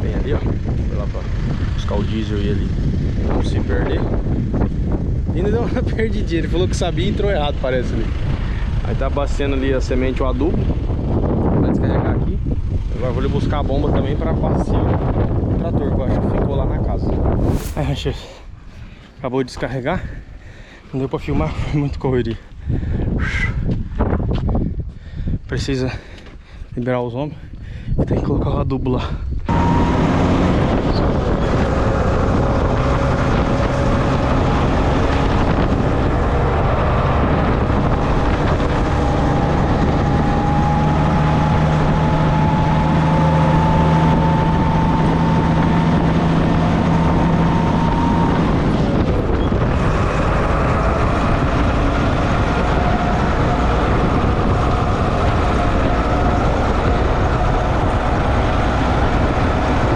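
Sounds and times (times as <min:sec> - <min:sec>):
engine whine rising in pitch: 0:17.2 - 0:18.3, 0:29.5 - 0:59.9
vehicle engine running: 0:29.5 - 0:59.9.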